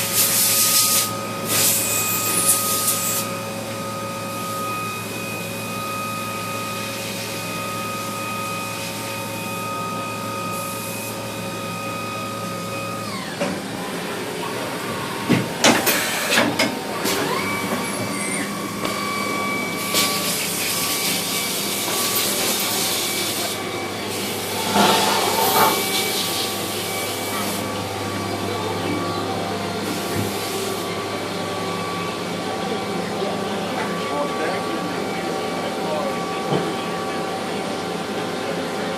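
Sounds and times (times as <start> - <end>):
machine spindle whine: 16.3 - 30.2.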